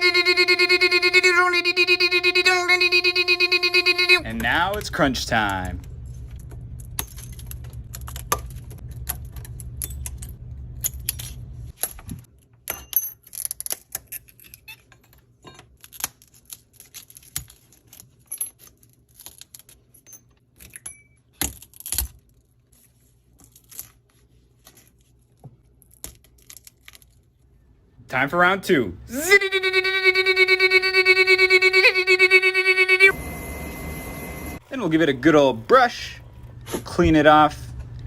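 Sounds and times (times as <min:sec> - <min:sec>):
low hum: 0:00.0 - 0:04.4, 0:29.0 - 0:38.0.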